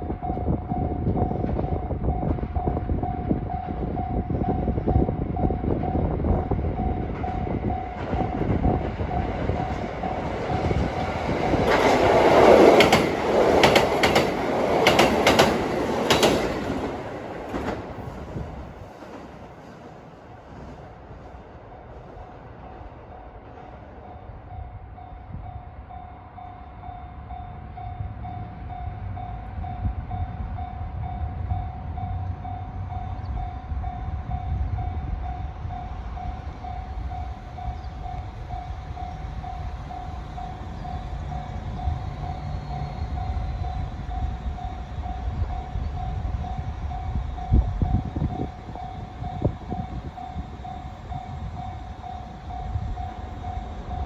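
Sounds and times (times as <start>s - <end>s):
diesel train rumbling past: 0.0s - 54.0s
level crossing warning bell: 24.2s - 54.0s.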